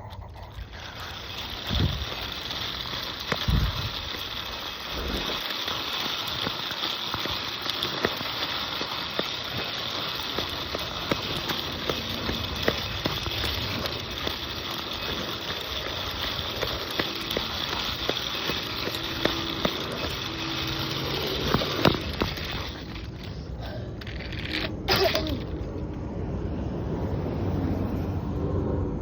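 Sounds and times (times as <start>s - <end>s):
crackling rustle of footsteps: 0.3s - 25.9s.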